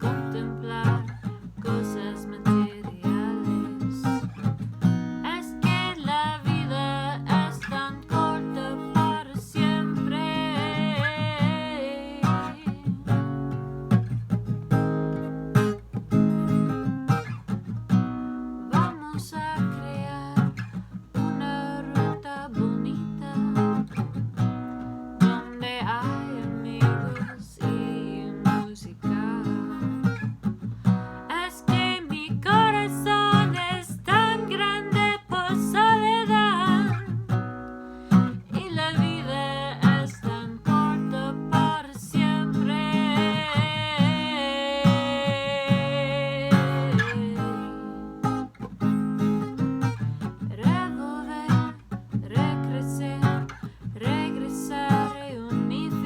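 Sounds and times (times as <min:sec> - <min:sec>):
person singing: 0:00.0 - 0:04.2, 0:05.3 - 0:13.2, 0:38.4 - 0:47.9, 0:50.4 - 0:56.0
acoustic guitar strumming: 0:00.0 - 0:56.0.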